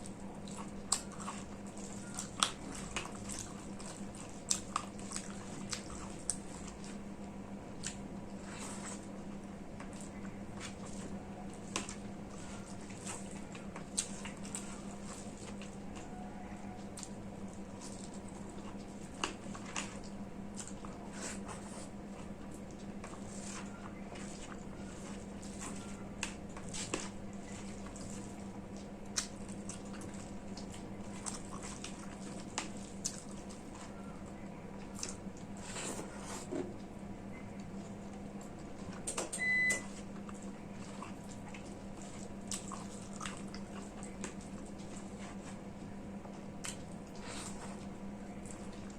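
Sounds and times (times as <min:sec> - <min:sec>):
wet chewing sounds: 0:00.0 - 0:48.9.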